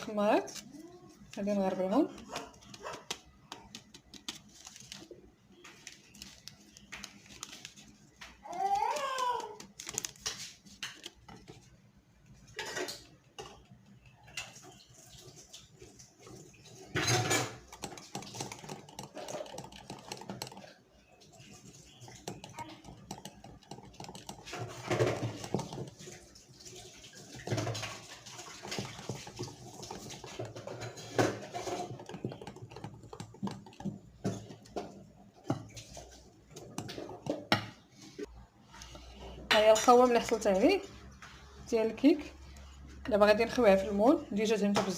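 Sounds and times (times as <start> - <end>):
utensils knocking on bowl and sieve: 16.9 - 20.8, 21.6 - 26.2.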